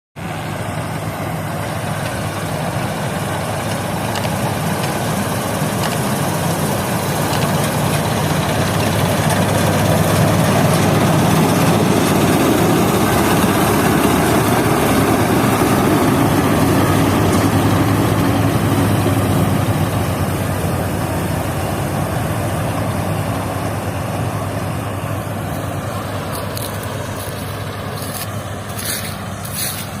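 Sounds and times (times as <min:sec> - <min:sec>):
combine harvester engine hum: 0:00.2 - 0:30.0.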